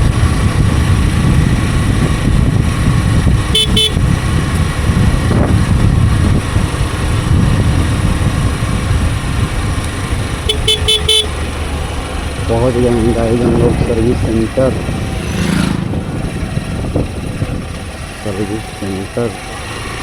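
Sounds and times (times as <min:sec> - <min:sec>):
wind rush: 0:00.0 - 0:10.4, 0:11.4 - 0:18.2
motorcycle engine drone: 0:00.0 - 0:20.0
vehicle horn beeps: 0:03.5 - 0:04.0, 0:10.5 - 0:11.4.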